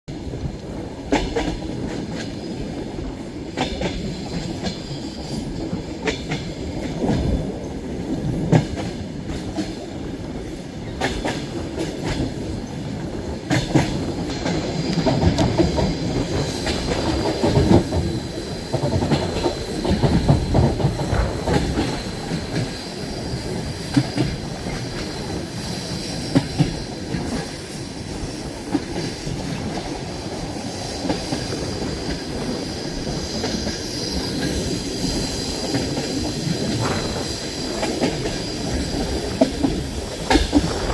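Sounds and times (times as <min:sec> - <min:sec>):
train rumbling on rails: 0:00.1 - 0:40.9.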